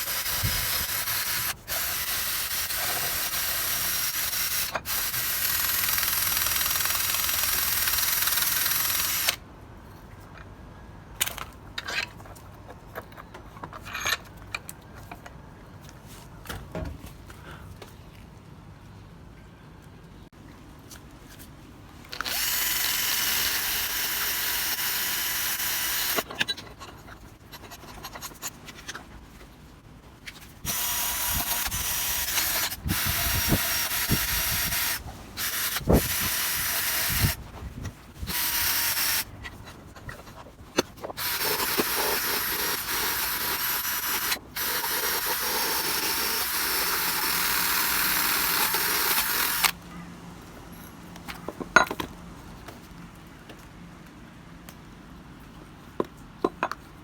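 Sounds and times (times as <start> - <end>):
power tool whining and grinding: 0.0 - 9.4, 22.1 - 26.3, 30.7 - 37.4, 38.2 - 39.3, 41.1 - 49.8.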